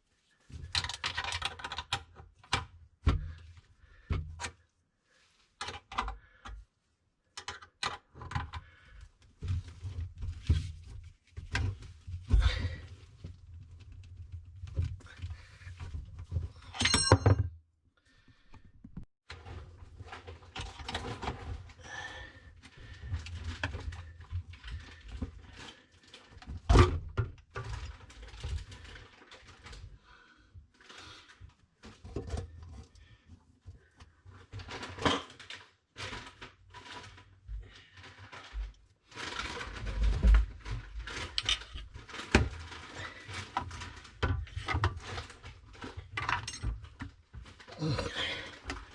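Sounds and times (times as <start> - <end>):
ringing metal clink: 16.8 - 17.5.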